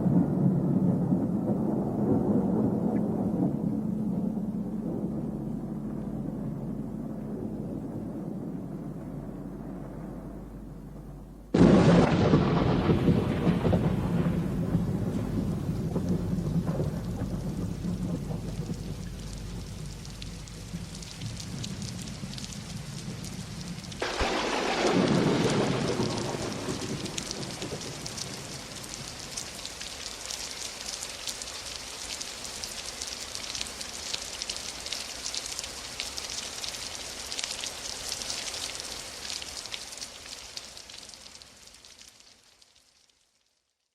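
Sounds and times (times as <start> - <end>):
thunder rumbling: 0.0 - 32.0
rain pattering: 0.0 - 43.9.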